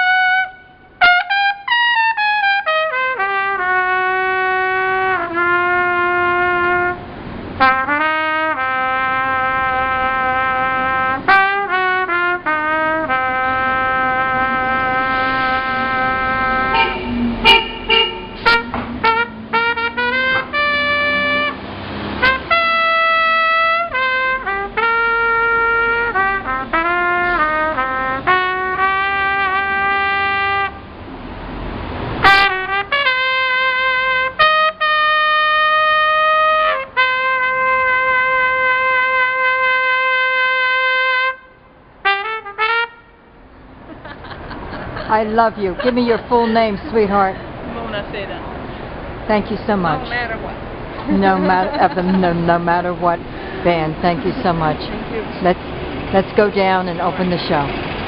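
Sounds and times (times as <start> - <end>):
solo trumpet melody: 0.0 - 21.6, 22.2 - 30.9, 32.2 - 43.4.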